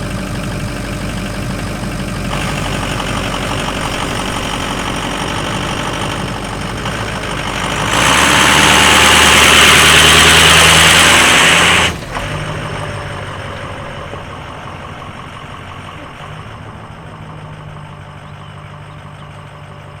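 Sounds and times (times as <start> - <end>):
diesel engine idling: 0.0 - 20.0.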